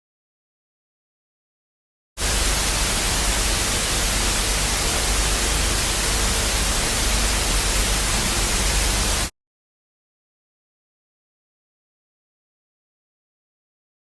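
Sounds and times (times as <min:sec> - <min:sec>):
static hiss: 0:02.2 - 0:09.3.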